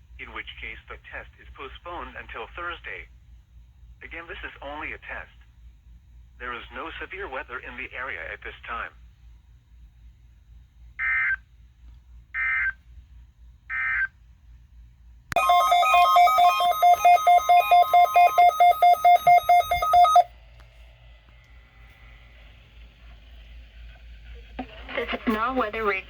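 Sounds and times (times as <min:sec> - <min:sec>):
two-tone data bursts: 0:15.4 - 0:20.2
loud electronic beeping: 0:15.4 - 0:20.3.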